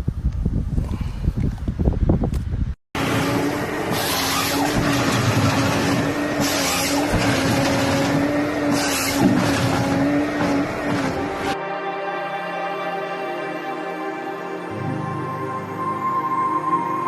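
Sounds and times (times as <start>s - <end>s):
motor running: 3.0s - 11.6s.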